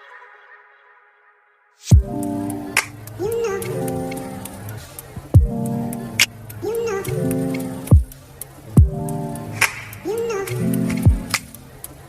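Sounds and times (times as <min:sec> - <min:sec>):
sustained synth chords: 0:01.9 - 0:12.0
deep falling kick drum booms: 0:05.4 - 0:05.6, 0:08.8 - 0:09.0.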